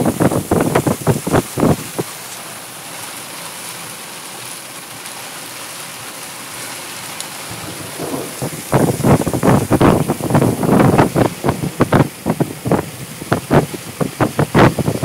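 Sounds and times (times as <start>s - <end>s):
rain falling: 0.0s - 15.0s
loud rumbling bursts: 7.5s - 14.2s.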